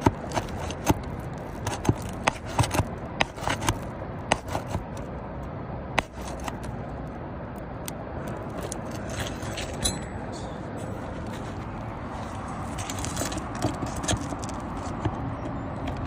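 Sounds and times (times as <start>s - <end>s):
hand tool scraping shingles: 0.0s - 5.0s, 6.0s - 6.7s.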